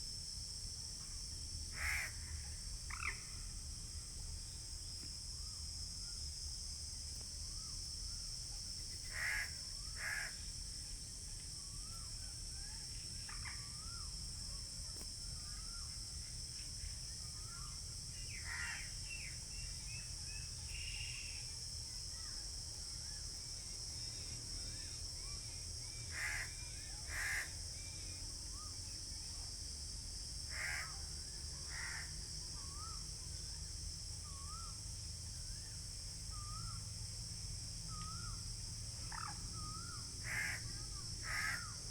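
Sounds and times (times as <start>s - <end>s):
high insect drone: 0.0s - 41.9s
crows cawing: 1.8s - 2.1s, 30.5s - 30.9s, 40.3s - 40.6s, 41.2s - 41.7s.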